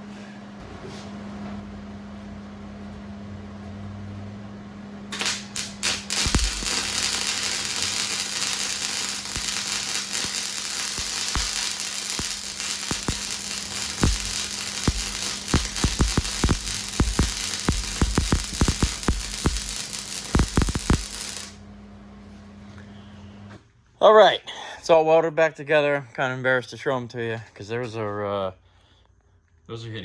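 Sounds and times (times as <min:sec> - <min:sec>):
welding arc crackling and popping: 0:05.1 - 0:21.6
welder low hum: 0:05.1 - 0:23.5.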